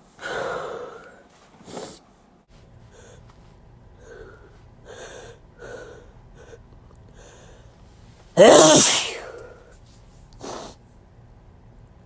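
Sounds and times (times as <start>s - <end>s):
person gasping before sneeze: 8.4s - 9.5s.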